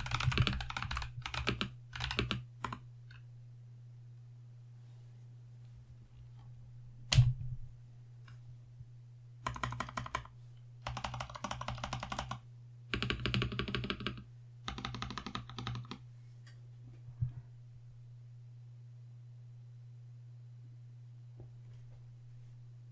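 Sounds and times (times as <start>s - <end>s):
mechanical keyboard typing: 0.0s - 2.8s, 9.4s - 12.4s, 13.0s - 16.0s
faint low hum: 0.0s - 22.9s.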